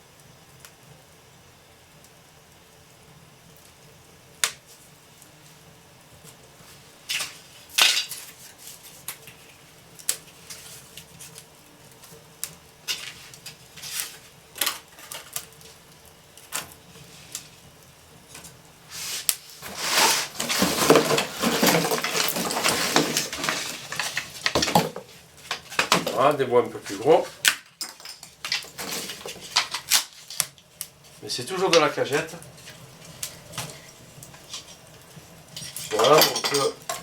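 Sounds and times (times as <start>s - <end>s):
fire crackling and popping: 0.0s - 37.0s
wooden slats clattering: 19.6s - 26.2s.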